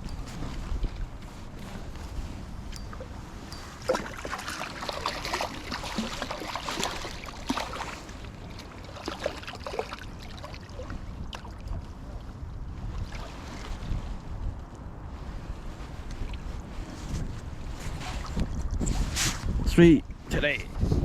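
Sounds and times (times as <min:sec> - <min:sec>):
river water splashing: 0:00.0 - 0:11.9
wind rumble on microphone: 0:00.0 - 0:21.0.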